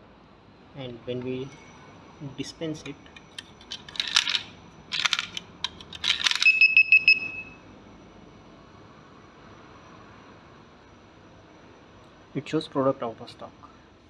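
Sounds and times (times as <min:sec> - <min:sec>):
coins clinking: 0:03.2 - 0:07.5
high-pitched buzzer beeps: 0:06.4 - 0:07.6.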